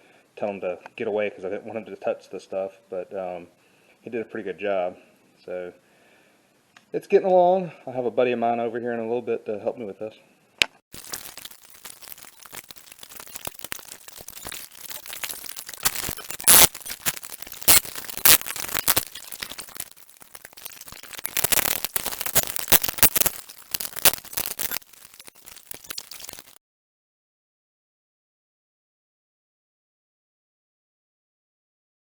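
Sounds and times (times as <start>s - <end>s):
brittle material cracking off metal: 10.9s - 26.6s.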